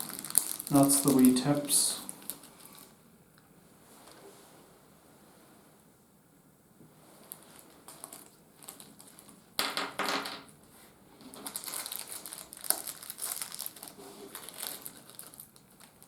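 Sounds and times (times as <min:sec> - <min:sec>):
packaging crinkling: 0:00.0 - 0:02.9, 0:07.2 - 0:09.4, 0:11.2 - 0:16.0.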